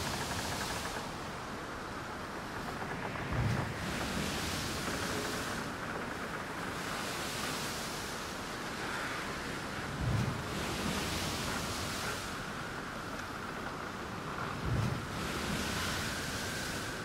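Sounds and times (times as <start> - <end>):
ocean surf washing in: 0.0 - 17.0
wind buffeting microphone: 0.0 - 17.0.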